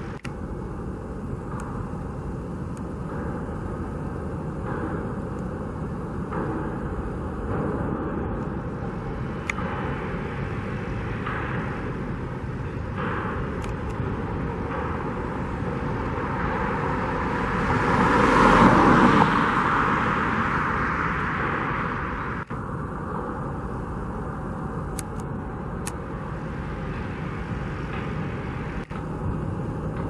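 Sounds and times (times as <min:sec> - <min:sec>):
vehicle passing close by: 0:16.8 - 0:22.4.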